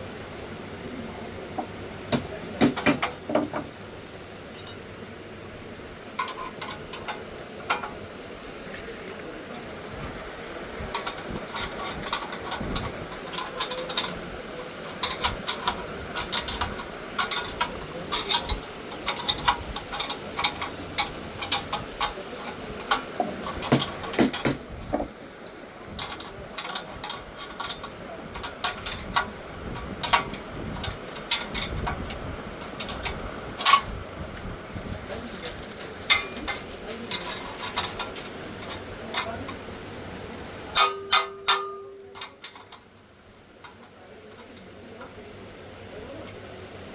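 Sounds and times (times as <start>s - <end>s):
hard parts clicking and knocking: 1.6s - 5.0s, 6.1s - 8.0s, 10.8s - 34.5s, 35.3s - 45.2s.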